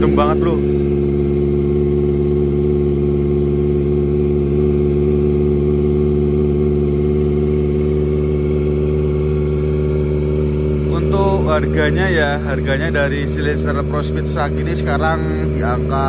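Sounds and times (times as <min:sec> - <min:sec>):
motorcycle engine idling: 0:00.0 - 0:16.0.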